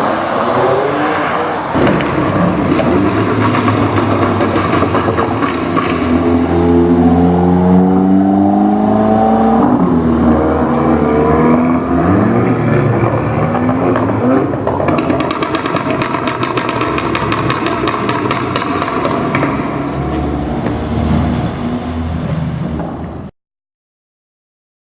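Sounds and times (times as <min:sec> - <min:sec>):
car engine accelerating hard: 0:00.0 - 0:23.0
exhaust crackles and pops: 0:01.8 - 0:07.1, 0:12.2 - 0:20.9.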